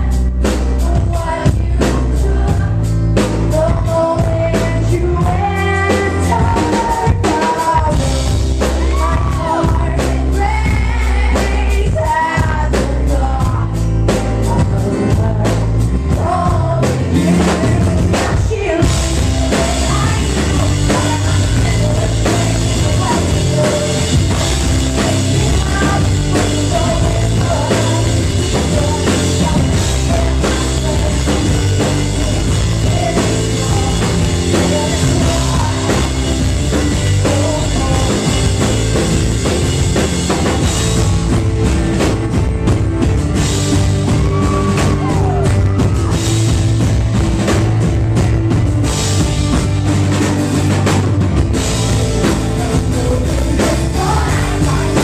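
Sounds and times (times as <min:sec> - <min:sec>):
person singing: 0:00.0 - 0:39.7, 0:52.0 - 0:55.0
drum kit: 0:00.0 - 0:55.0
live pop-rock band playing: 0:00.0 - 0:55.0.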